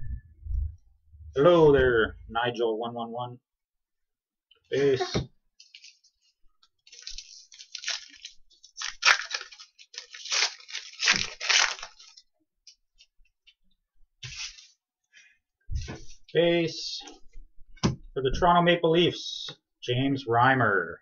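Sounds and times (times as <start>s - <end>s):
card pack wrapper crinkling: 5.6s - 6.0s, 6.9s - 12.2s
cards rustling: 5.6s - 6.1s, 6.9s - 12.2s.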